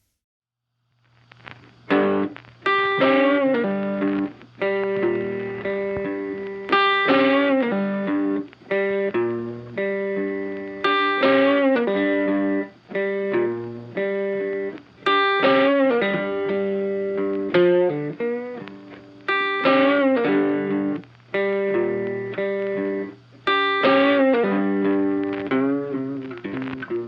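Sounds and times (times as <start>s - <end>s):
funky guitar chords with effects: 1.2s - 27.0s.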